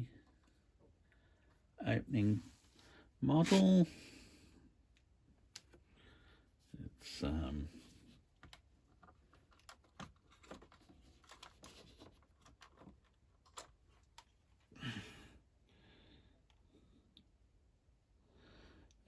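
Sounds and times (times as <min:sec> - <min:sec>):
hands handling toy car: 0:08.3 - 0:14.6.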